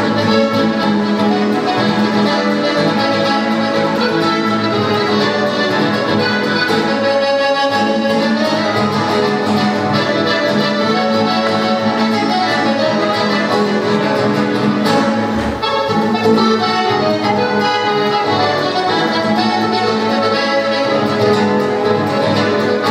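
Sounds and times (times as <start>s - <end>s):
latin instrumental trio music: 0.0s - 22.9s.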